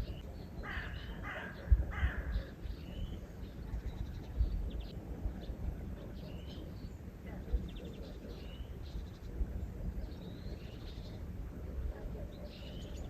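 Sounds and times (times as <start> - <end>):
bird calling: 0.0 - 3.6
small birds chirping: 0.0 - 13.0.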